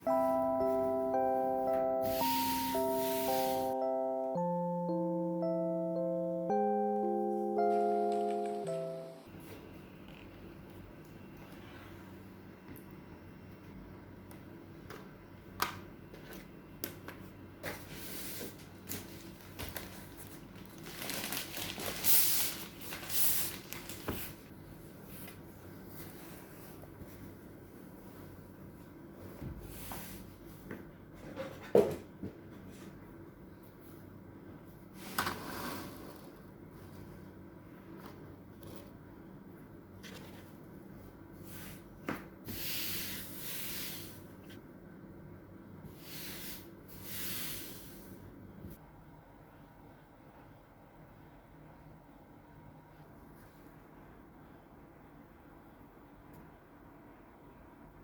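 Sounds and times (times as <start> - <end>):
packaging rustling and crinkling: 18.6 - 24.5.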